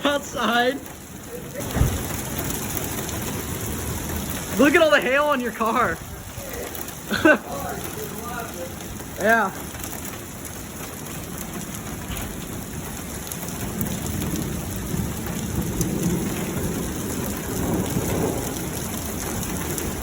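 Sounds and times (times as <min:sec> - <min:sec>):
heavy rain and hail falling: 0:00.0 - 0:20.0
low rumble of thunder: 0:00.0 - 0:20.0.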